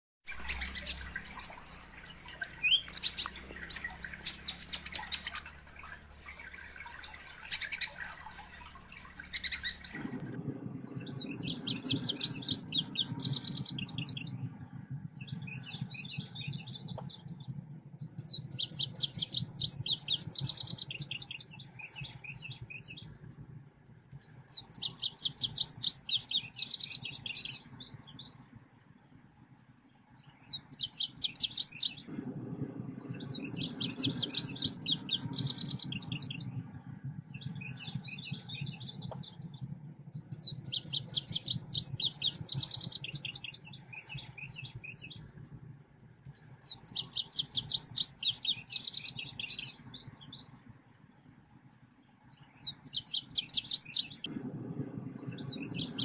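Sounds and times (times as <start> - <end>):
high bird chirping: 0.3 - 10.4
low background rumble: 0.3 - 56.0
trilled birdsong: 0.3 - 56.0
thin high whistles: 6.1 - 10.4.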